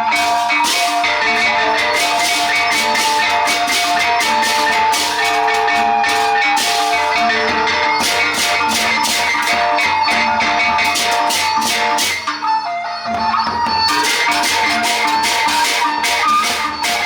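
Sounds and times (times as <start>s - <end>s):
ringing metal gong tones: 0.0s - 12.1s
big drums beating: 0.0s - 17.0s
clashing cymbals: 0.0s - 17.0s.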